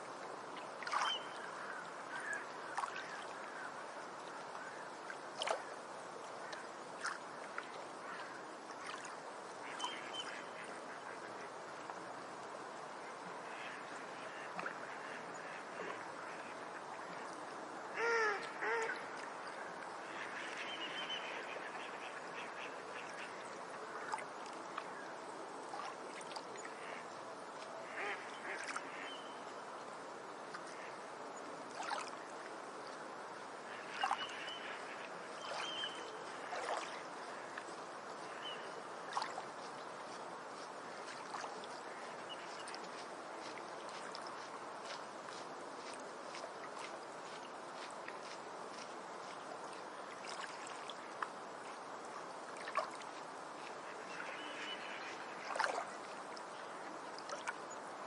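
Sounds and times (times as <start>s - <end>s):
background hiss: 0.0s - 58.0s
ducks quacking: 27.9s - 29.1s.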